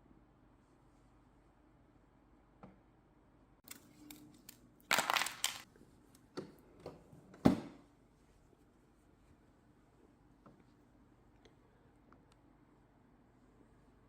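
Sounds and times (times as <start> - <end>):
ice cubes clattering and clinking: 4.9 - 5.6.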